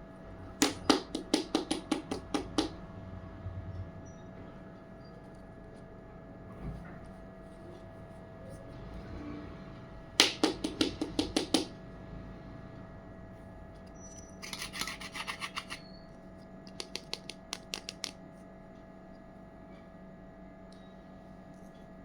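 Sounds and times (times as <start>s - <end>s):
toy pieces scraping: 14.4s - 15.9s.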